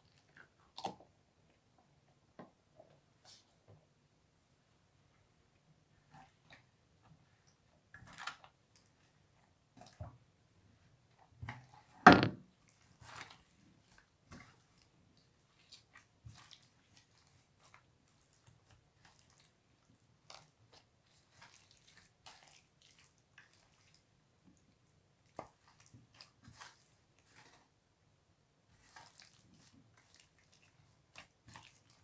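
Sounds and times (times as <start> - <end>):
sharp knock: 12.1 - 12.4.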